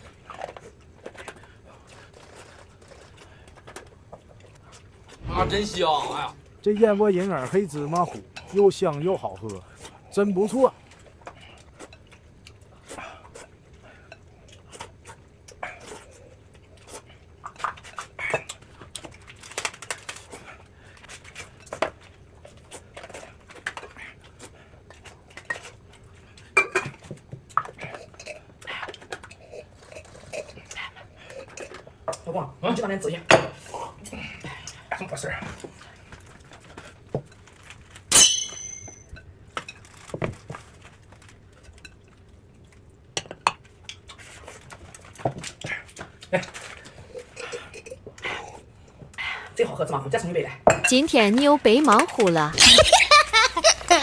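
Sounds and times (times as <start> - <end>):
spoon clinking against bowl: 38.1 - 39.2.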